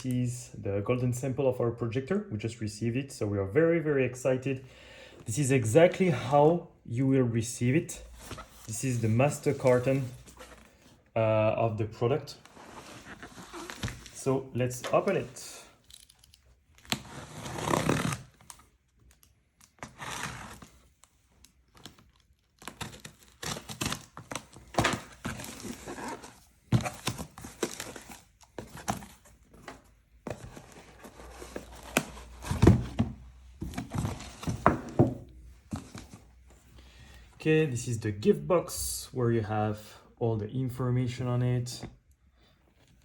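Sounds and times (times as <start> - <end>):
cardboard flaps rustling and scraping: 8.0 - 11.0, 12.4 - 15.4, 22.8 - 36.3
tape tearing: 15.9 - 29.2.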